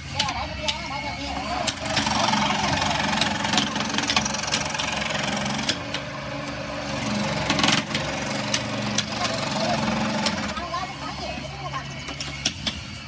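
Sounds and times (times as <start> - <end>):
motor humming: 0.0 - 13.0
sharp clicks and knocks: 1.6 - 9.4.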